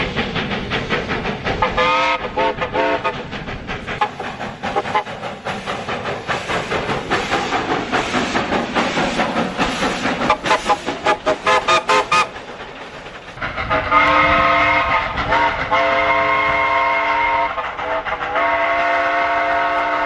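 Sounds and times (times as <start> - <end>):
steam train exhaust beat: 0.0 - 20.0
track noise: 0.0 - 20.0
train whistle toots: 1.6 - 3.2, 10.3 - 12.4, 13.6 - 20.0.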